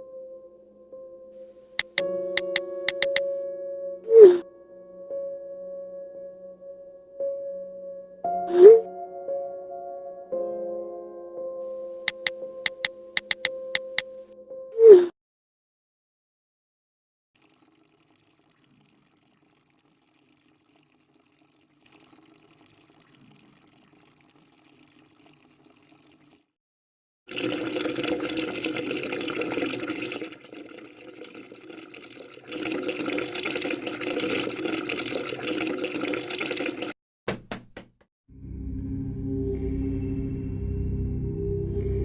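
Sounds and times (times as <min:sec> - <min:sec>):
short clicks: 0:01.8 - 0:03.3, 0:12.0 - 0:14.1
tap running into a sink: 0:01.8 - 0:03.3, 0:32.6 - 0:37.9
low gong-like tone: 0:38.4 - 0:42.0.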